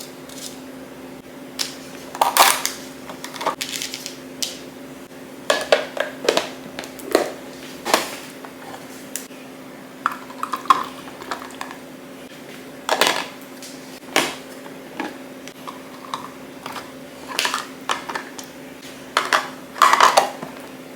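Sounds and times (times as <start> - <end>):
steady low hum: 0.0 - 20.9
containers clinking and clattering: 1.6 - 4.2, 5.5 - 9.0, 10.0 - 11.8, 12.8 - 13.4, 14.0 - 20.7.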